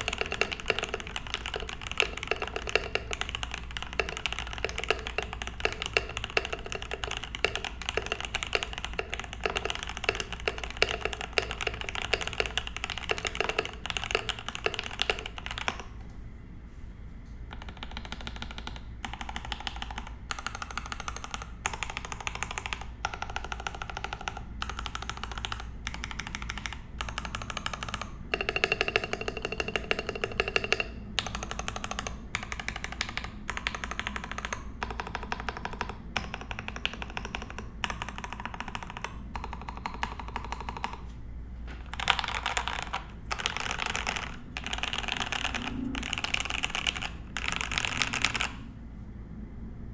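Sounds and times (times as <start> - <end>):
mechanical keyboard typing: 0.0 - 16.0, 17.5 - 48.7.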